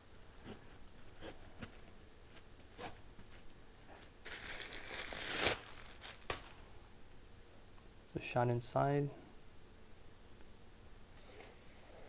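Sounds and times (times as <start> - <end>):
crinkling rustle: 1.7 - 6.8.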